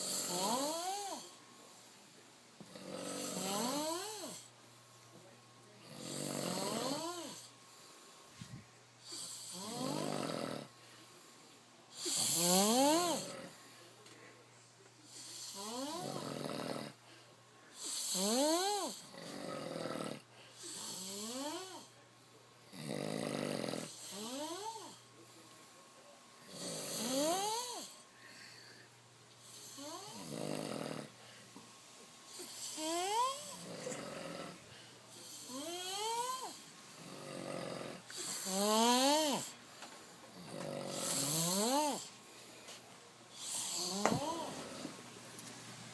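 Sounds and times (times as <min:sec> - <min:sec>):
men snoring: 0:00.0 - 0:01.3, 0:02.6 - 0:04.5, 0:05.8 - 0:07.5, 0:09.1 - 0:10.7, 0:12.0 - 0:13.6, 0:15.2 - 0:17.0, 0:17.8 - 0:21.9, 0:22.7 - 0:25.0, 0:26.5 - 0:28.0, 0:29.6 - 0:31.2, 0:32.3 - 0:39.6, 0:40.3 - 0:42.2, 0:43.4 - 0:45.0.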